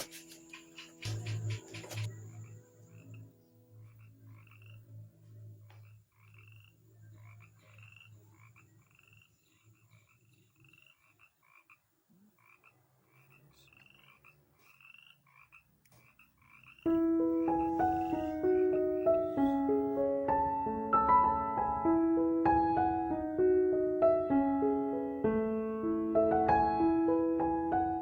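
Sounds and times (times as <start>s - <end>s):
frogs chirping: 0.0s - 19.7s
piano music: 16.9s - 28.0s.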